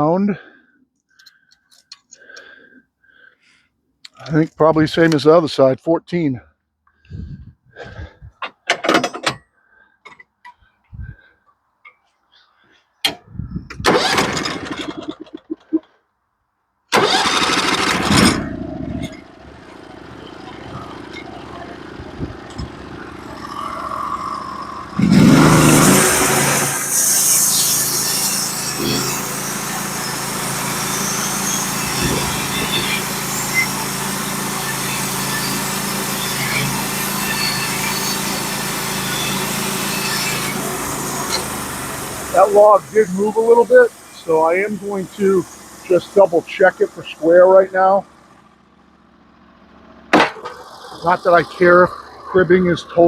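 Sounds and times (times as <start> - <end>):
gas engine starting and idling: 13.7 - 15.8, 16.9 - 27.3, 28.5 - 53.0
band blade cutting log hiss: 24.9 - 47.9.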